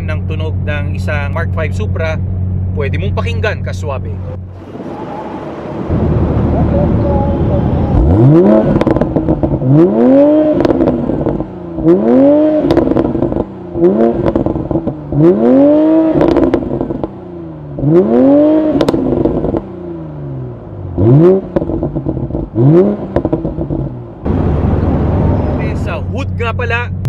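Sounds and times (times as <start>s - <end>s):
car engine revving: 0.0s - 27.0s
exhaust pops and crackles: 5.9s - 9.8s, 12.6s - 13.5s, 14.1s - 15.3s, 16.2s - 17.2s, 18.7s - 19.7s, 21.5s - 25.0s.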